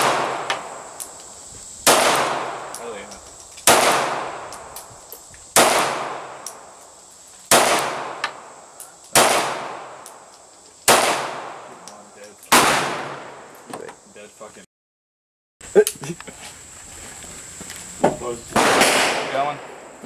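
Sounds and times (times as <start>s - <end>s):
pistol shots echoing: 0.0s - 1.1s, 1.8s - 2.8s, 3.6s - 4.6s, 5.6s - 6.6s, 7.5s - 8.5s, 9.1s - 10.2s, 10.9s - 11.7s, 12.5s - 13.5s, 18.6s - 20.0s.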